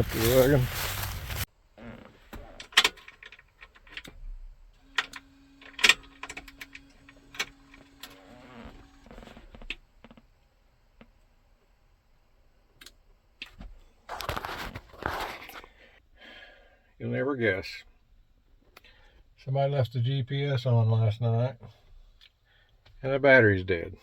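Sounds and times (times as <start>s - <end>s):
steady low buzz: 0.0s - 1.5s.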